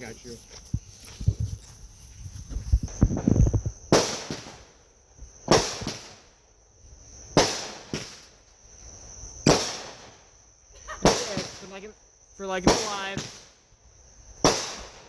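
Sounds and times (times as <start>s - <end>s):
crickets chirring: 0.0s - 15.0s
fireworks bangs: 2.8s - 6.4s, 7.2s - 8.4s, 9.4s - 13.6s, 14.3s - 15.0s.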